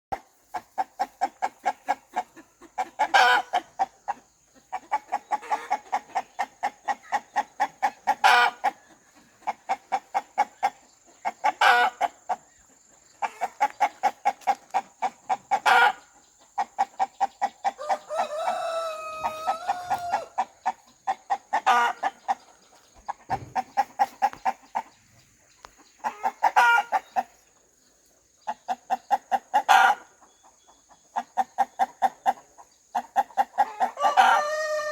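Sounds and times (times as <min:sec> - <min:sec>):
rooster clucking: 0:00.5 - 0:25.0, 0:25.7 - 0:27.4, 0:28.5 - 0:30.4, 0:31.0 - 0:34.9
rooster squawk: 0:17.8 - 0:20.4.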